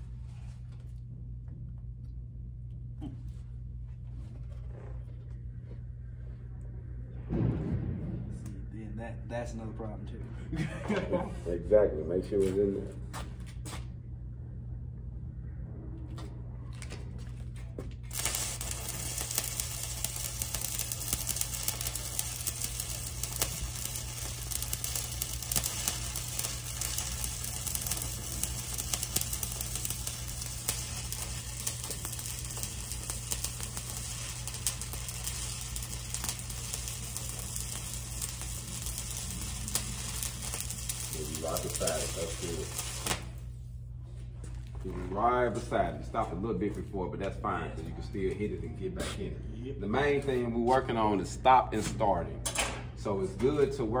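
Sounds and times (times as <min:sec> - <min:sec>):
low hum: 0:00.0 - 0:12.1, 0:12.8 - 0:49.8
welding arc crackling sizzle: 0:18.0 - 0:43.6
welding arc strikes: 0:18.1 - 0:43.5.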